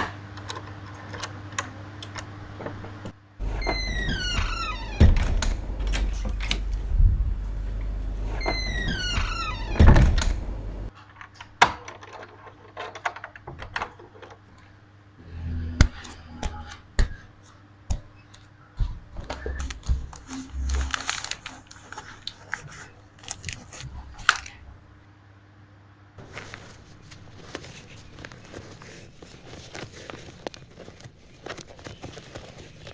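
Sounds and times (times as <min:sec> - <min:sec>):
loud knocks: 0:03.4 - 0:10.9.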